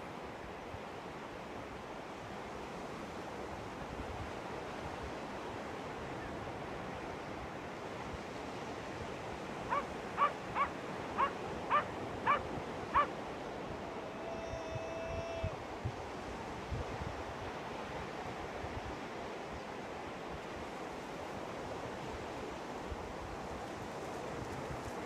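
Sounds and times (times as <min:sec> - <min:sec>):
surf washing: 0:00.0 - 0:25.0
wind: 0:00.0 - 0:25.0
dog barking: 0:09.7 - 0:13.1.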